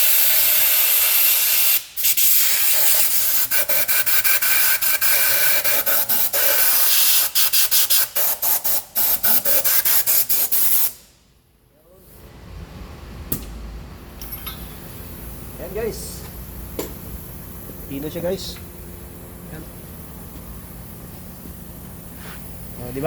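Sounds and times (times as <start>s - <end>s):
high-pressure spray gun hissing: 0.0s - 11.1s.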